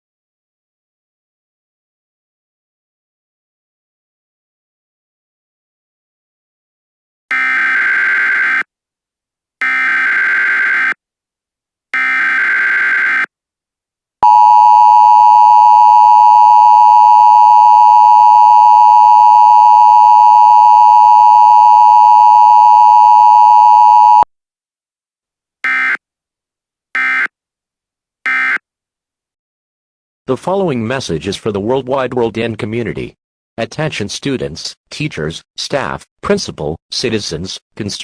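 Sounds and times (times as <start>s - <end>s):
steady attention tone: 14.2s - 24.2s.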